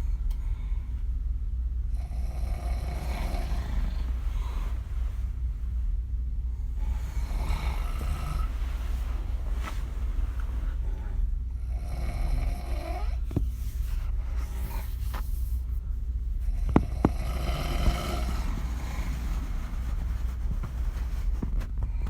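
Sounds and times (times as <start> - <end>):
steady low hum: 0.0 - 22.0
woman snoring: 1.9 - 5.3, 6.8 - 13.4, 16.5 - 20.0.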